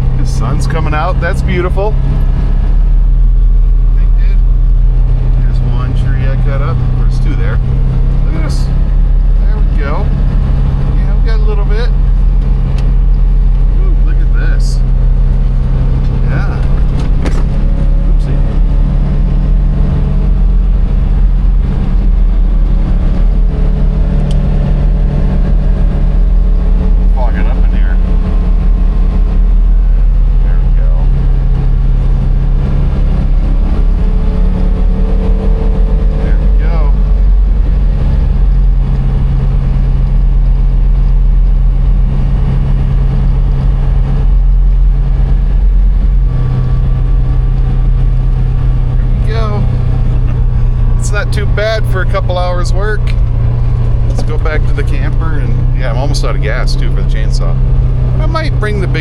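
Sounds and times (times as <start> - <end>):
vehicle engine from inside cab: 0.0 - 59.0.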